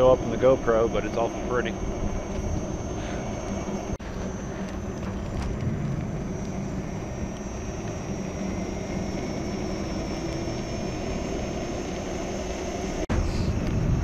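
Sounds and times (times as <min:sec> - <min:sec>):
faint high whine: 0:00.0 - 0:14.0
wind rumble on microphone: 0:13.1 - 0:14.0.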